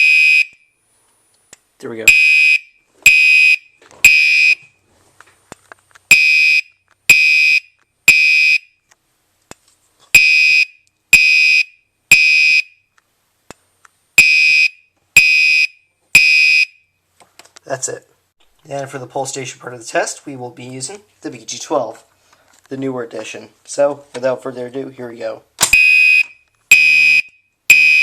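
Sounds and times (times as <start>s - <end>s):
fire alarm horn blasts: 2.1s - 4.6s, 25.8s - 28.0s.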